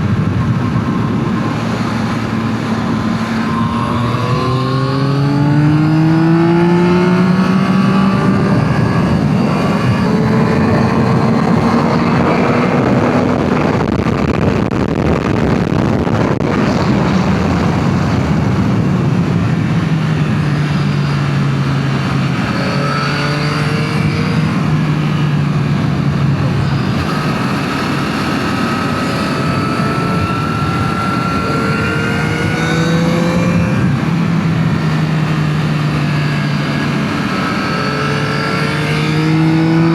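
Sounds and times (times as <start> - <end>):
motorcycle engine revving: 0.0 - 39.9
steady rushing noise: 0.0 - 39.9.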